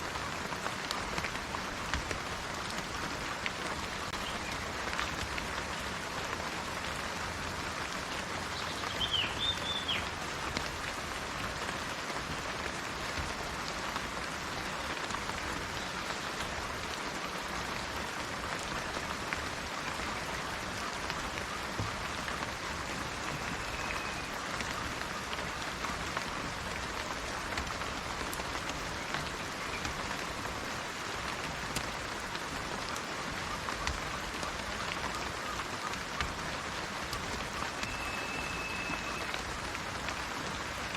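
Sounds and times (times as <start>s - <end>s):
steady rain hiss: 0.0s - 40.9s
bird calling: 37.5s - 39.4s.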